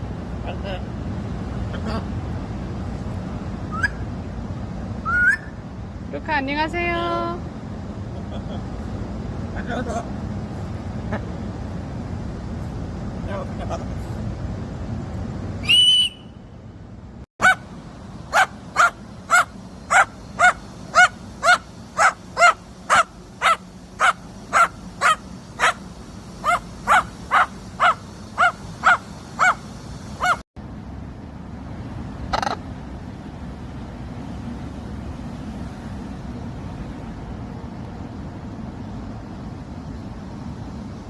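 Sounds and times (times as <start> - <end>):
high squawk: 3.7 - 4.1, 5.0 - 5.6, 17.4 - 17.7, 18.3 - 30.4, 32.3 - 32.7.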